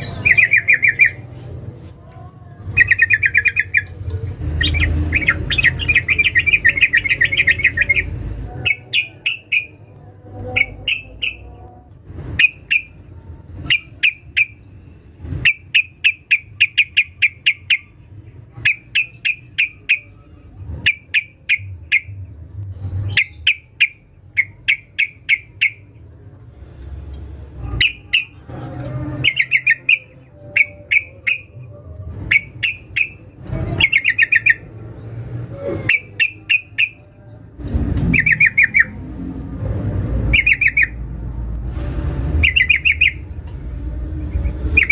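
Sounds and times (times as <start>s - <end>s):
bird chattering call: 27.8s - 28.4s, 29.2s - 31.6s, 32.3s - 34.7s, 38.1s - 39.0s, 40.3s - 41.0s.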